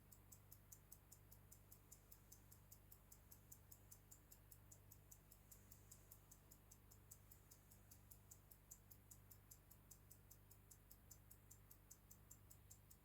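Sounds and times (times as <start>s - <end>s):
pocket watch ticking: 0.0s - 13.0s.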